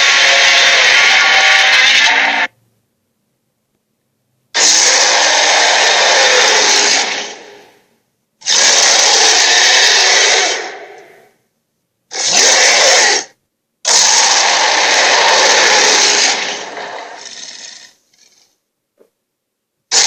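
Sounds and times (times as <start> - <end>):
dragon roaring: 0.0 - 2.5, 4.6 - 7.8, 8.4 - 11.3, 12.1 - 18.3.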